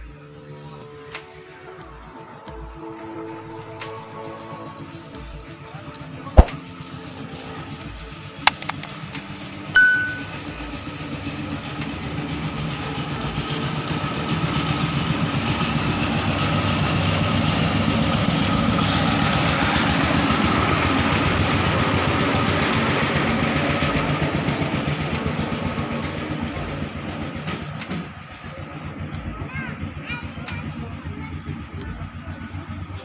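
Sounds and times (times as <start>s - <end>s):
background music: 0.1s - 6.2s
sharp clicks and knocks: 8.5s - 8.9s
vehicle engine running: 10.3s - 33.0s.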